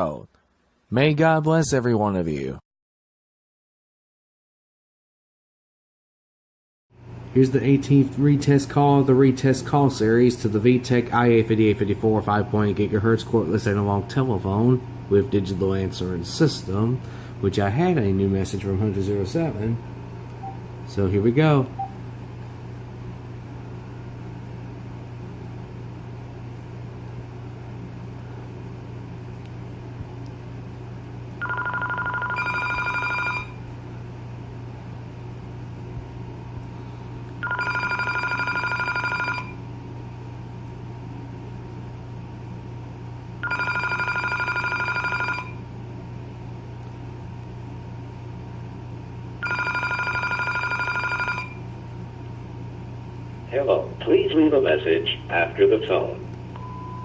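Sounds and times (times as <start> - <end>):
steady low hum: 7.0 - 43.6, 44.3 - 57.0
cordless phone ringing: 31.4 - 33.6, 37.4 - 39.6, 43.4 - 45.6, 49.4 - 51.6.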